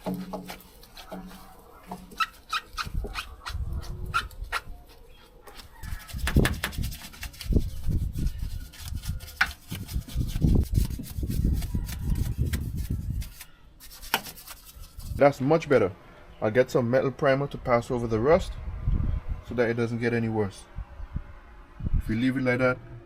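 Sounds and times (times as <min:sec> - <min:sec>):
brush scrubbing metal: 0:00.0 - 0:15.3.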